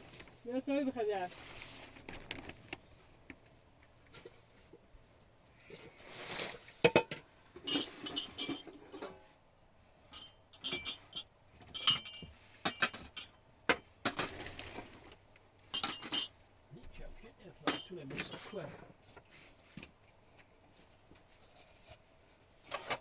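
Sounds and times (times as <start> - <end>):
hard objects clinking and clattering: 6.8 - 9.2, 10.1 - 15.0, 15.7 - 16.4, 17.6 - 18.6.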